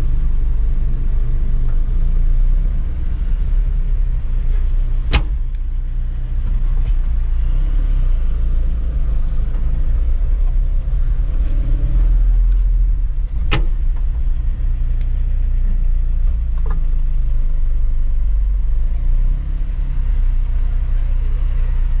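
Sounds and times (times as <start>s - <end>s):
diesel engine running: 0.0s - 22.0s.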